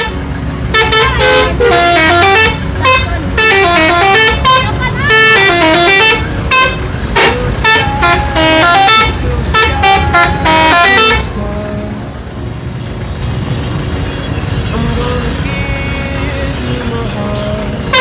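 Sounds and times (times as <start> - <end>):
multi-tone musical bus horn: 0.0 - 11.4
engine and traffic rumble: 0.0 - 18.0.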